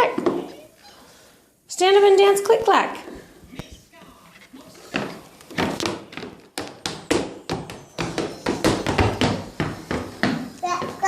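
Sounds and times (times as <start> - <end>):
hard-soled shoes tapping on floor: 0.0 - 0.6, 4.8 - 11.0.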